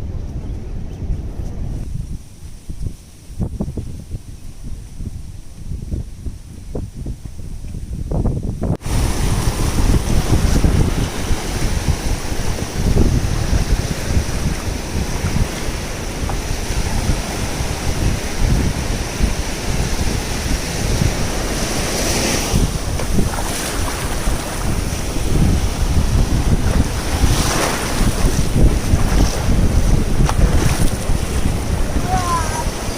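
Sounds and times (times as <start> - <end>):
wind buffeting microphone: 0.0 - 32.9
sea waves: 8.8 - 32.9.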